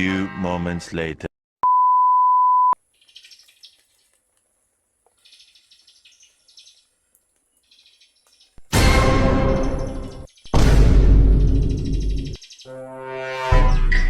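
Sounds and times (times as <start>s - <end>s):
small birds chirping: 2.8s - 8.6s, 9.5s - 10.6s, 11.2s - 12.8s.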